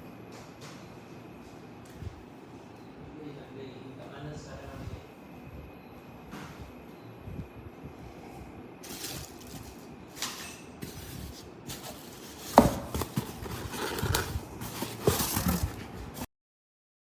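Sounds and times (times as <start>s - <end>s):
hard objects knocking and clicking: 12.4s - 15.9s.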